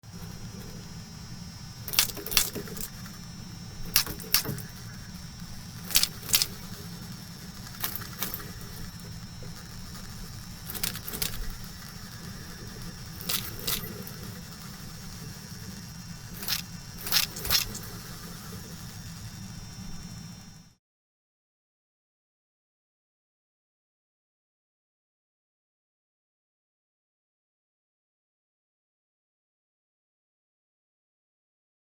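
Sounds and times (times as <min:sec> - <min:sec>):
steady low hum: 0:00.0 - 0:20.8
crab rasping: 0:00.1 - 0:20.3.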